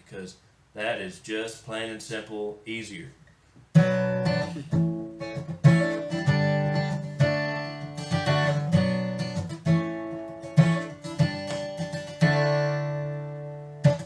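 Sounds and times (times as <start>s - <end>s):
acoustic guitar strumming chords: 3.7s - 14.0s.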